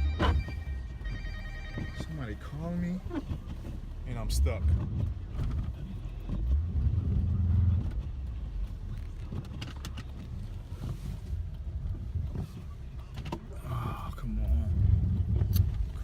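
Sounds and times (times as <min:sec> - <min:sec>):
car engine rumbling: 0:00.0 - 0:16.0.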